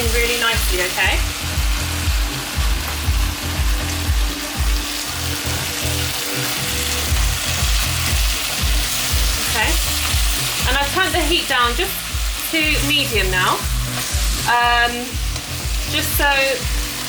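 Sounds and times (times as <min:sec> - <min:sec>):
noodles sizzling in a pan: 0:00.0 - 0:17.0
dance music with bass beat: 0:01.1 - 0:06.0.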